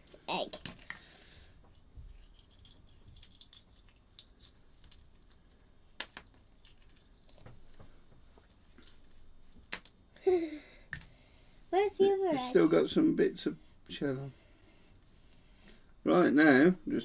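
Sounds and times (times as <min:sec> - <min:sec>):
eggshell clicking and crackling: 0:00.0 - 0:10.0.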